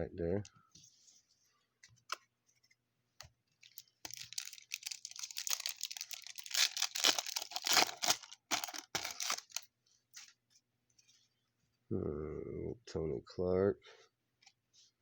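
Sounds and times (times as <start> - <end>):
wrapper tearing and crinkling: 3.6 - 9.7.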